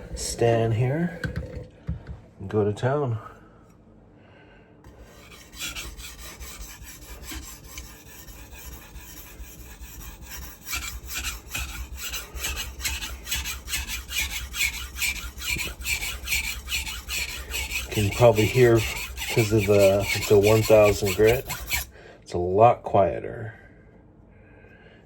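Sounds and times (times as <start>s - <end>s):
knife rasping on whetstone: 4.9s - 21.9s.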